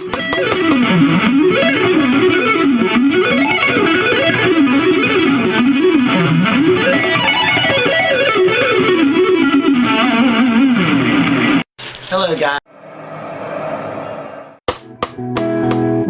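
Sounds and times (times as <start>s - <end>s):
electric guitar shred lick: 0.0s - 11.1s.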